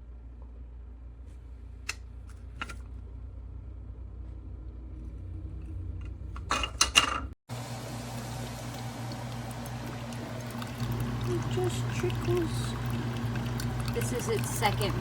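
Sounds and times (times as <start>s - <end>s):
coffee brewer humming: 7.5s - 15.0s.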